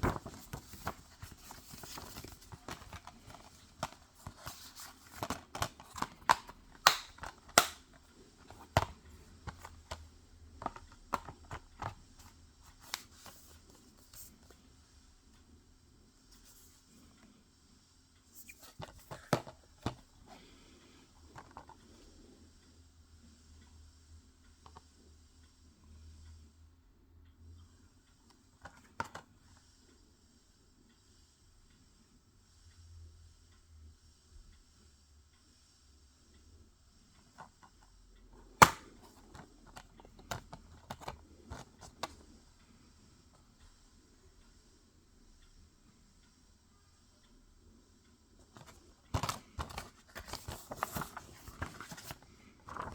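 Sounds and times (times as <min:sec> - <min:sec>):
plastic cases clicking: 0:00.0 - 0:13.4, 0:18.6 - 0:20.1, 0:38.5 - 0:42.2, 0:48.6 - 0:52.9
plastic case snapping: 0:01.5 - 0:07.9, 0:38.6 - 0:41.6.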